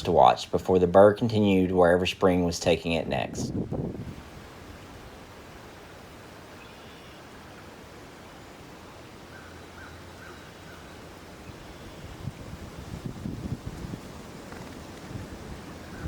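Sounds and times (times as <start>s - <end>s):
outdoor background noise: 0.0s - 16.0s
faint bird calls: 6.5s - 7.7s, 9.3s - 12.2s.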